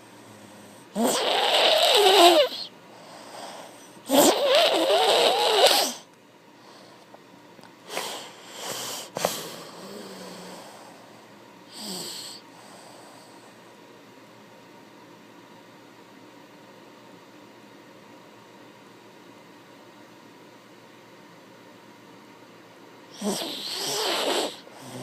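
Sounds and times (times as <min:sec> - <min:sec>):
person snoring: 0:00.2 - 0:06.1, 0:07.9 - 0:11.0, 0:11.7 - 0:13.4, 0:23.1 - 0:25.0
snorting breaths: 0:07.9 - 0:13.6, 0:23.2 - 0:25.0.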